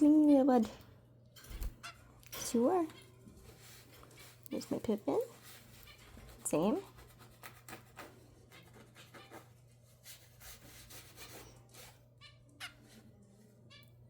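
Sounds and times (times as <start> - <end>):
scratching and rustling: 2.9 - 12.0.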